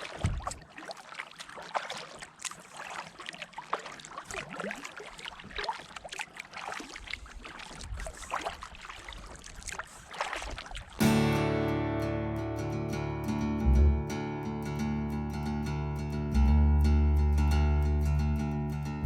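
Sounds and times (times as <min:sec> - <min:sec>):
paddle splashing and dripping: 0:00.0 - 0:11.2
water lapping along hull: 0:00.0 - 0:11.2.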